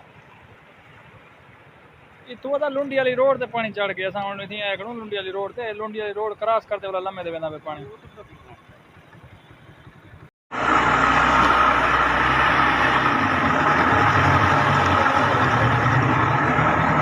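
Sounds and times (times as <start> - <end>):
motor vehicle running: 6.6 - 17.0.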